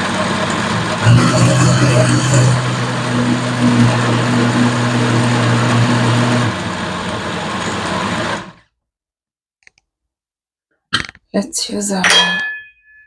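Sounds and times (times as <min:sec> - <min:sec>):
blender motor running: 0:00.0 - 0:08.6.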